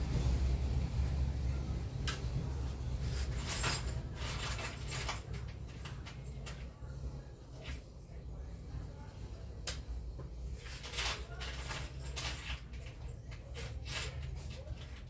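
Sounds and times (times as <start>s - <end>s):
low hum: 0.0s - 3.5s.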